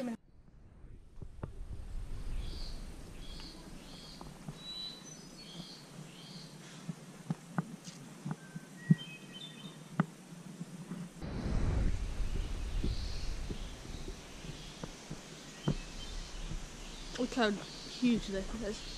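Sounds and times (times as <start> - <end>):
bird chirping: 2.1 - 6.8, 8.3 - 9.9, 12.2 - 18.9
whistled bird notes: 2.3 - 6.5, 8.3 - 9.8, 12.2 - 18.9.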